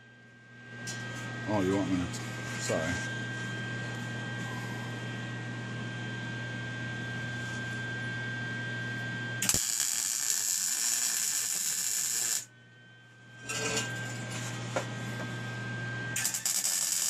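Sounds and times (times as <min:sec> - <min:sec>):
steady electrical hum: 0:00.0 - 0:17.0
welder arc crackling and buzzing: 0:09.4 - 0:12.6, 0:16.1 - 0:17.0.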